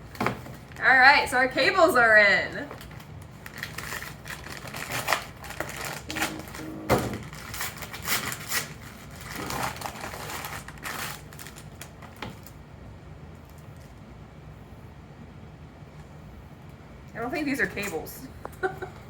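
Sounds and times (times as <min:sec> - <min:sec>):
faint low hum: 0:00.2 - 0:08.0.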